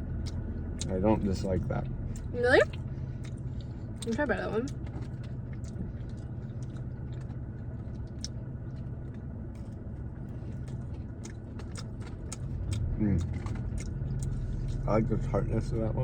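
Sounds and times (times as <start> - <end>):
low hum: 0.0 - 16.0
crunchy chewing: 2.2 - 14.9.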